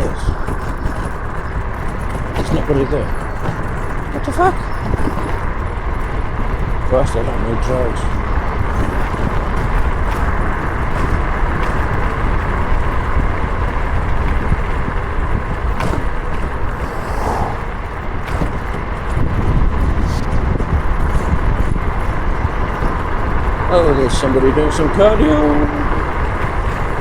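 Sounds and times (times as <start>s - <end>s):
road noise: 0.0s - 27.0s
wind rush over microphone: 0.0s - 27.0s.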